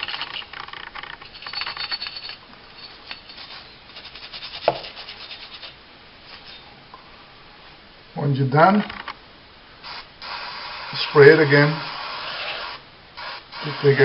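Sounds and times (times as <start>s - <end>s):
brush scrubbing metal part: 2.8s - 6.6s.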